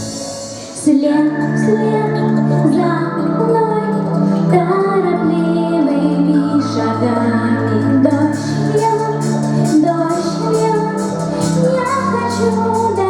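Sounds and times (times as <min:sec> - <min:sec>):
instrumental backing with bass: 0:00.0 - 0:13.0
woman singing: 0:00.6 - 0:13.0.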